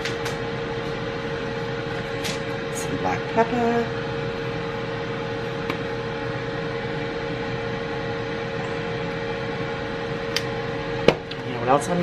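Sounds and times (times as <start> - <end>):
appliance fan whirring: 0.0 - 12.0.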